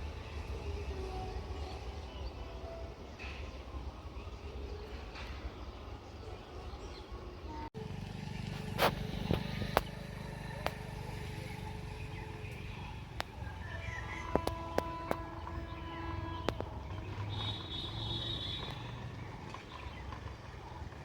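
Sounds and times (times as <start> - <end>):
low vehicle rumble: 7.6 - 21.0.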